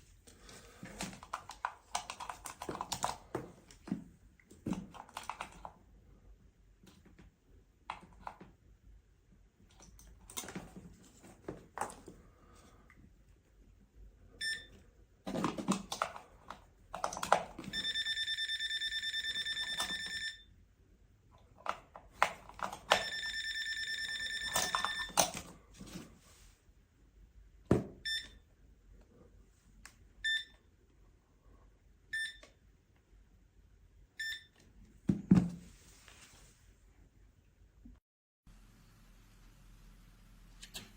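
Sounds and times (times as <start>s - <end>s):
multimeter long beeps: 14.4s - 14.7s, 17.7s - 20.5s, 22.8s - 25.3s, 28.1s - 28.4s.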